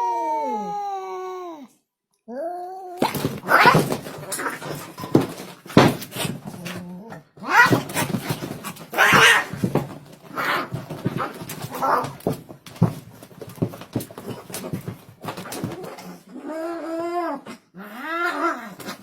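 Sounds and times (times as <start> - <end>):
dog calling: 8.9 - 9.7.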